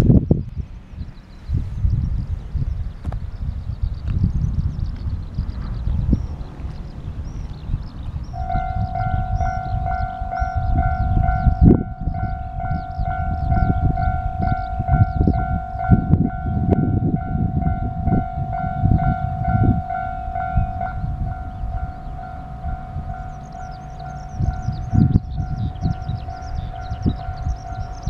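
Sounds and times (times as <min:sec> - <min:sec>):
low rumbling with knocks: 0:02.0 - 0:28.0
steady tone: 0:08.2 - 0:28.0
level crossing electronic bell: 0:08.4 - 0:28.0.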